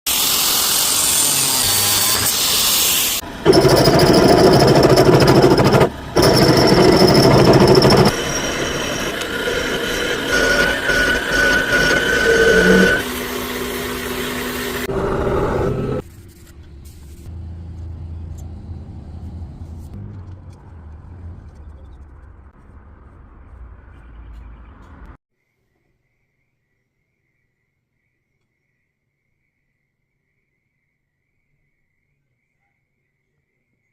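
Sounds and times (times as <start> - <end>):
power tools whining: 0.1 - 16.0.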